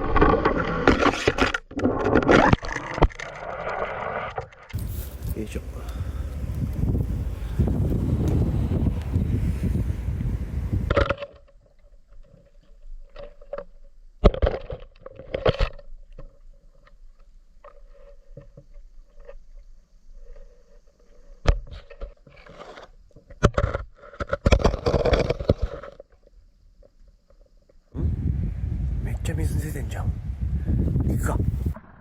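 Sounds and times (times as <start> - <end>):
wind on camera microphone: 4.7 - 11.1, 28.0 - 32.0
faint steady hum: 4.8 - 10.9.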